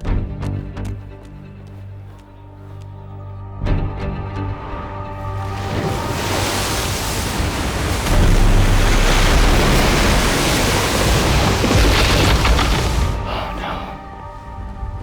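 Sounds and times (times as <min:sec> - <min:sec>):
floodwater rushing: 0:05.2 - 0:15.0.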